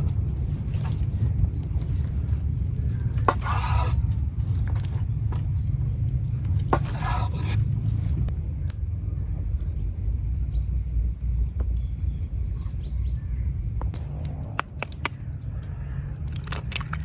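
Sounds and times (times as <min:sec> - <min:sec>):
steady low rumble: 0:00.0 - 0:17.0
scraping strokes with click and swish: 0:03.0 - 0:04.2.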